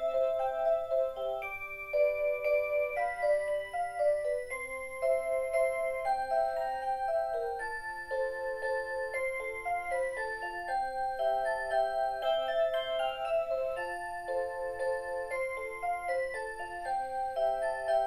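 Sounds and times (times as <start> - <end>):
alarm clock electronic melody: 0.0 - 18.0.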